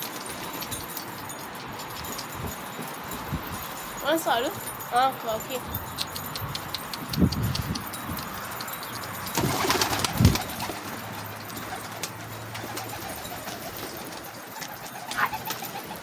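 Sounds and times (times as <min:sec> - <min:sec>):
pigeons cooing: 0:08.2 - 0:16.0.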